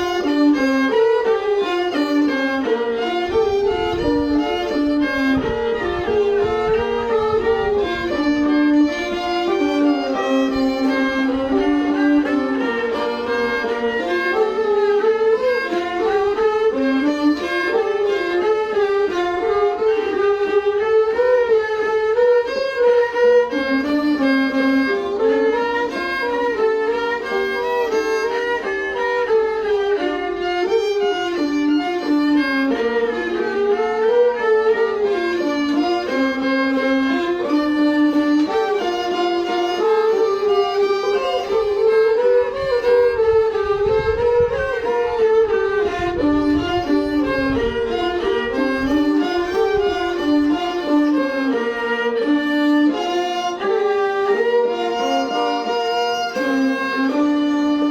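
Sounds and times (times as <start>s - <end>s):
steady low drone note: 0.0s - 21.6s
bowed string melody: 0.0s - 57.9s.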